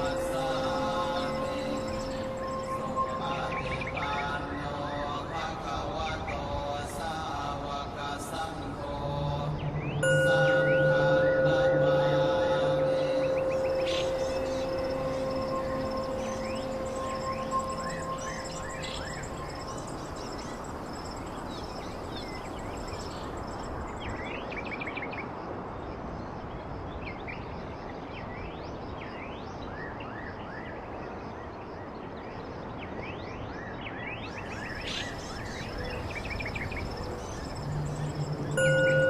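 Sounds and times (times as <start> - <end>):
high insect buzz: 0.0 - 4.5, 10.3 - 23.8
small birds chirping: 0.0 - 7.1, 9.5 - 24.6, 34.2 - 39.0.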